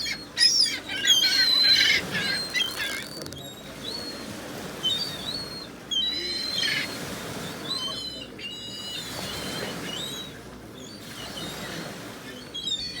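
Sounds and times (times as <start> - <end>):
seagulls calling: 0.0 - 4.2, 4.8 - 10.3.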